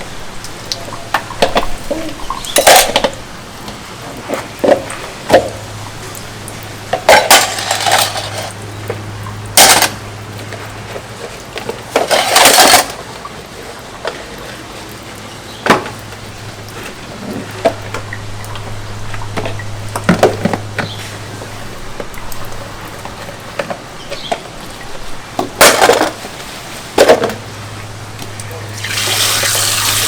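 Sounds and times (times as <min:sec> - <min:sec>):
dishes and pots clinking: 0:00.8 - 0:03.2, 0:07.0 - 0:08.6.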